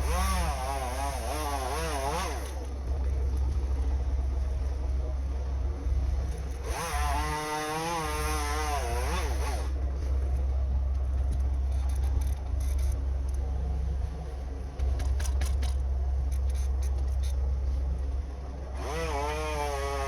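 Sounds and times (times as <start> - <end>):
small engine revving: 0.0 - 2.7, 6.6 - 9.8, 18.7 - 20.0
steady low rumble: 0.0 - 20.0.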